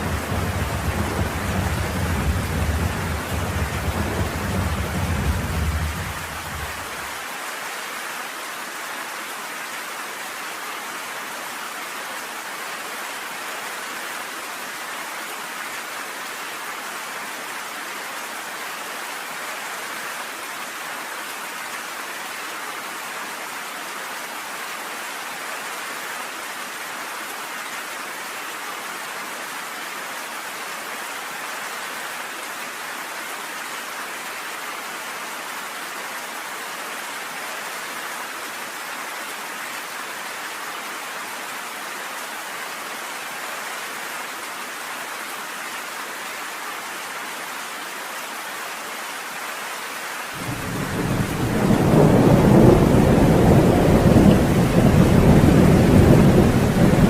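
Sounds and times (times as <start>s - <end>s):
thunder rumbling: 0.0s - 6.9s, 50.4s - 57.0s
rain on a porch: 0.0s - 57.0s.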